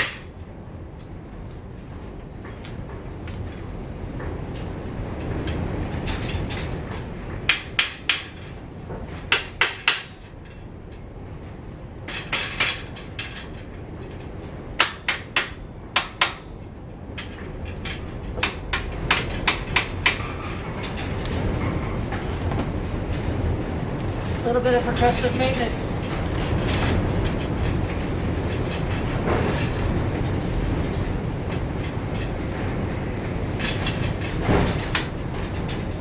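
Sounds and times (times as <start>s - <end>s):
hammer striking bicycle wheel: 7.5s - 8.4s, 9.3s - 10.2s, 14.8s - 16.5s.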